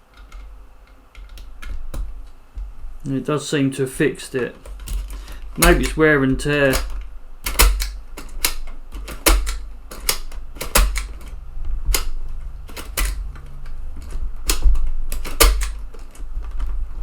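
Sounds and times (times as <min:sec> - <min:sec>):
floppy drive eject mechanism clicks: 0:04.6 - 0:06.0.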